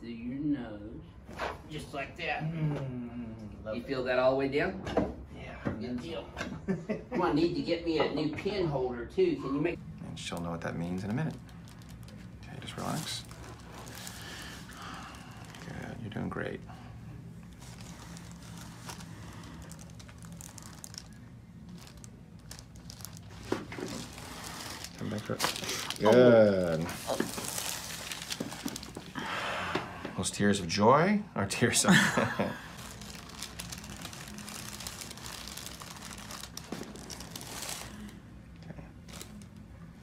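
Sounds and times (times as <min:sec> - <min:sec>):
steady low hum: 0:09.7 - 0:40.0
crinkling and rustling: 0:10.2 - 0:16.6, 0:17.3 - 0:29.2, 0:32.2 - 0:39.7.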